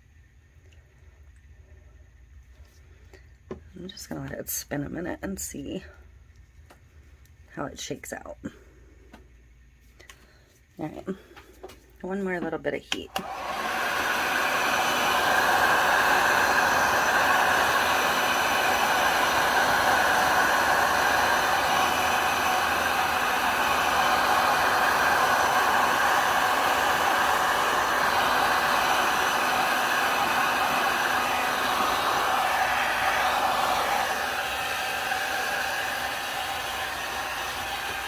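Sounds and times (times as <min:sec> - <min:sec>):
heat gun blowing air: 0:13.1 - 0:38.0.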